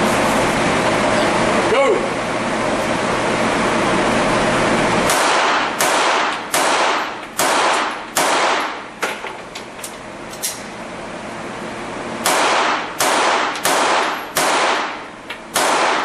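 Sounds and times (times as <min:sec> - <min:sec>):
handgun shots echoing: 0:05.1 - 0:08.8, 0:12.2 - 0:16.0.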